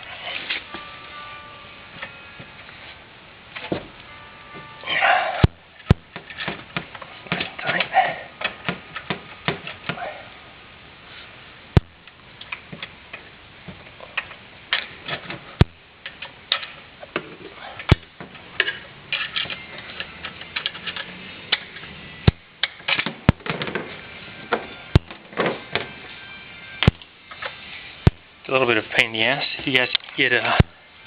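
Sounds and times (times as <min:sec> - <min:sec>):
sharp metallic clicks: 0:26.8 - 0:28.2.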